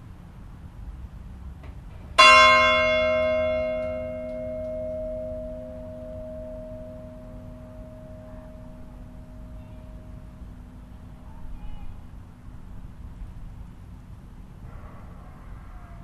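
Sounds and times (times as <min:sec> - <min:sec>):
church bell stroke ringing: 0:02.2 - 0:11.2.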